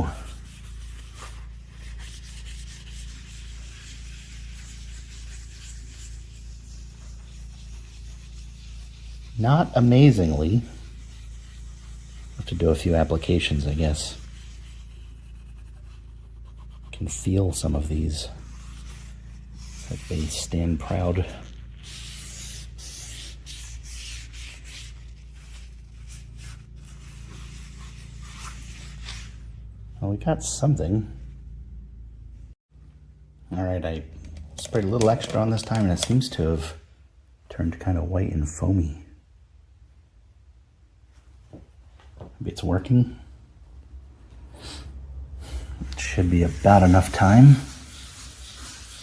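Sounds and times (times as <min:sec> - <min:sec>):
rag scrubbing steel surface: 0:00.0 - 0:29.5, 0:45.6 - 0:49.0.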